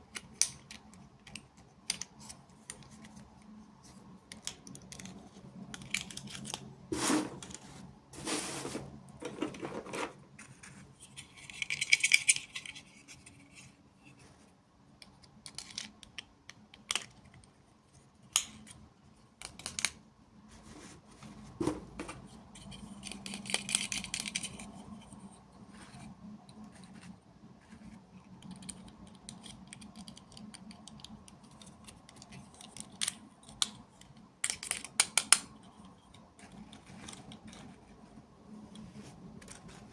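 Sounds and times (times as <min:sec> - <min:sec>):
plastic toys clicking and tapping: 0:00.0 - 0:03.4, 0:04.0 - 0:06.7, 0:15.0 - 0:17.6, 0:19.4 - 0:20.0, 0:22.6 - 0:24.9, 0:28.3 - 0:37.8.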